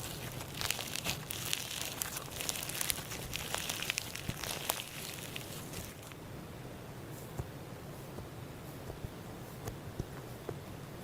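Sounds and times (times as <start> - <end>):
crinkling handling noise: 0.0 - 6.2.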